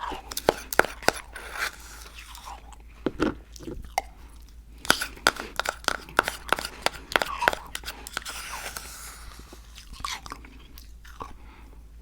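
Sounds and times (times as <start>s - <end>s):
chewing crunchy food: 0.0s - 12.0s.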